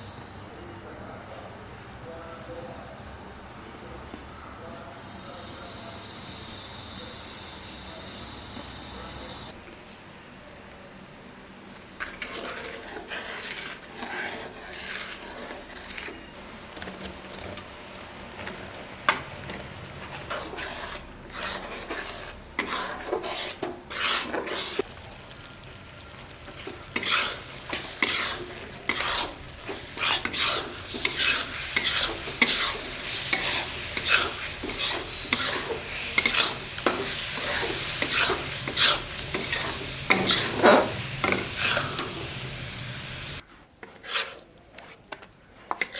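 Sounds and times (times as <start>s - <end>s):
light sizzle: 5.1s - 45.9s
spatula scraping a pan: 12.0s - 17.7s, 20.0s - 24.9s, 26.5s - 45.9s.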